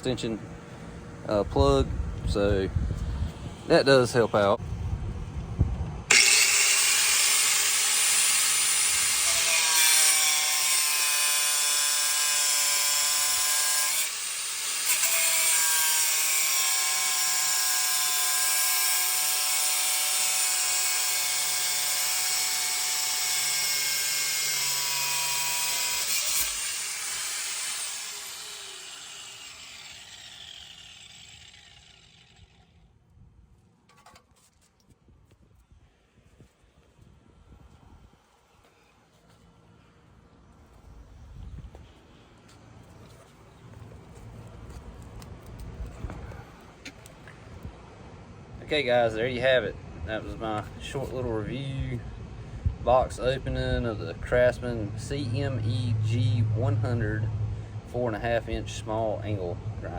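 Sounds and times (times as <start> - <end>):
angle grinder whining: 6.1 - 32.8
grinder winding down: 6.1 - 32.8.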